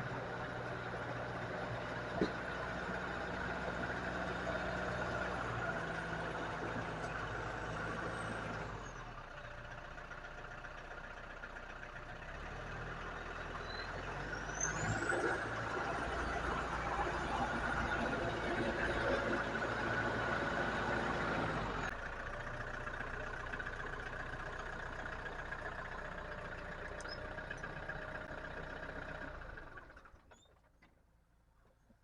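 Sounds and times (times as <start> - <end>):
tractor diesel engine running: 0.0 - 31.9
rising squeal: 13.6 - 18.0.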